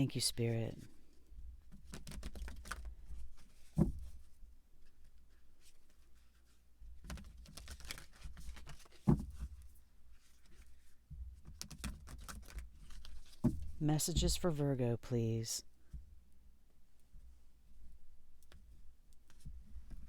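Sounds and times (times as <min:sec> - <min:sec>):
cards being shuffled: 0:01.7 - 0:03.5, 0:07.0 - 0:09.5, 0:11.4 - 0:13.5.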